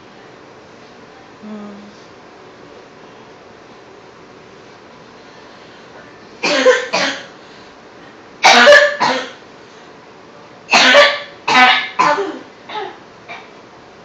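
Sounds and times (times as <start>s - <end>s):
forced coughing: 6.4s - 7.3s, 8.4s - 9.4s.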